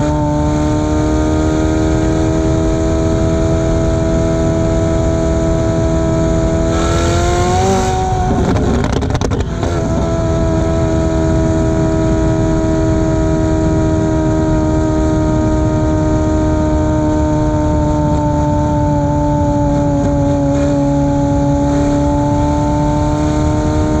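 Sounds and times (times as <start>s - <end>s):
sports car engine droning: 0.0s - 24.0s
exhaust crackles and pops: 6.4s - 12.6s, 17.2s - 22.3s.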